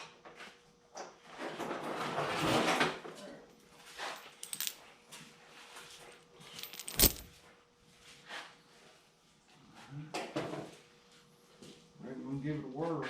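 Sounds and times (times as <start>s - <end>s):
scraping and rattling: 6.5s - 7.3s.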